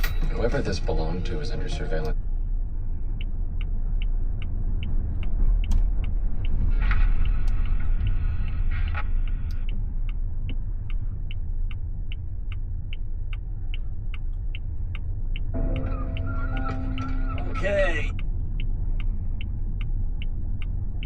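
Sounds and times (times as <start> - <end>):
turn signal ticking: 0.0 - 21.0
tyres rumbling on road: 0.0 - 21.0
brief bright tone: 15.6 - 18.0.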